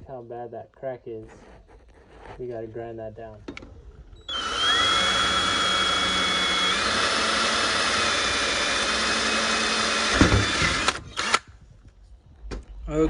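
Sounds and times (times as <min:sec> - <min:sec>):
rotary tool grinding metal: 0:04.3 - 0:11.4.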